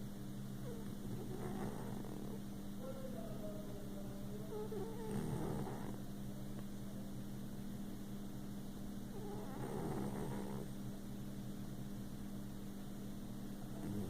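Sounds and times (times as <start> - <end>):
steady low hum: 0.0 - 14.0
kitten snoring: 0.6 - 2.5, 4.4 - 6.0, 9.1 - 10.8, 13.7 - 14.0.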